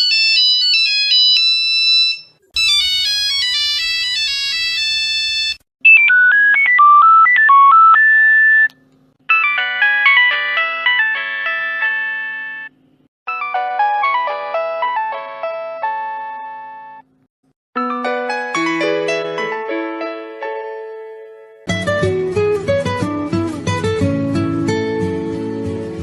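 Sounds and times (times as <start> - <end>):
mobile phone ringtone melodies: 0.0 - 8.7, 9.3 - 12.7, 13.3 - 17.0, 17.8 - 20.0.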